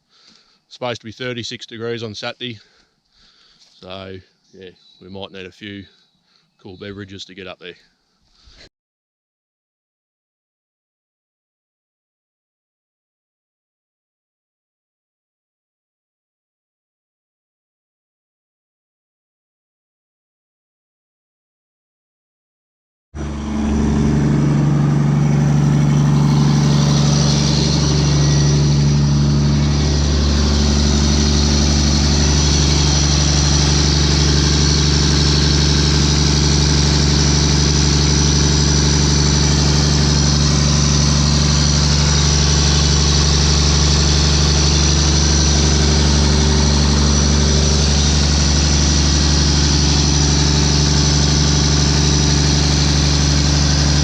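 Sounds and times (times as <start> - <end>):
excavator diesel engine idling: 23.2 - 54.0.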